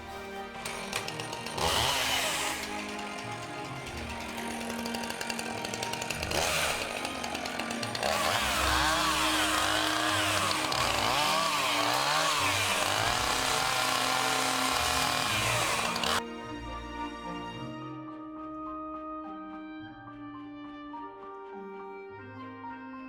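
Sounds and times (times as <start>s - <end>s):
chainsaw cutting wood: 0.0s - 16.2s.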